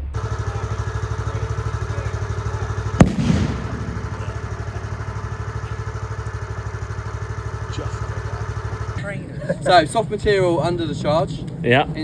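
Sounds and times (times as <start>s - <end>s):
engine idling: 0.0s - 12.0s
sharp crack: 3.0s - 5.3s.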